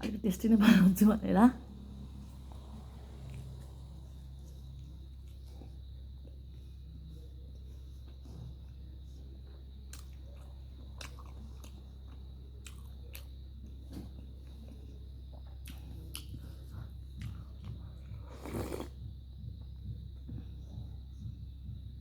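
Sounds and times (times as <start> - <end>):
person chewing crunchy food: 9.9 - 19.0.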